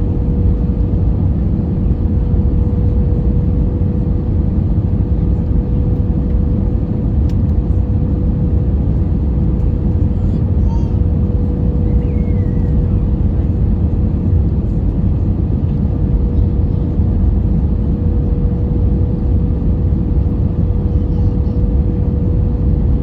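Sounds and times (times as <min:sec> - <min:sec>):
aircraft cabin engine rush: 0:00.0 - 0:23.0.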